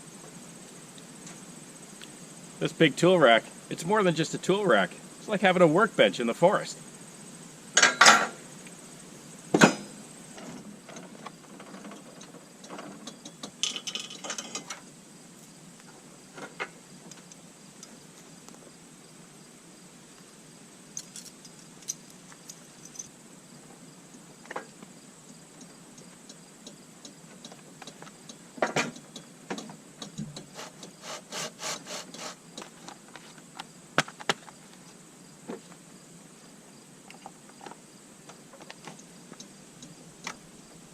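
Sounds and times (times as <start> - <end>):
sharp knocks and clicks: 27.0 - 30.9
rubbing and scraping: 30.2 - 33.3.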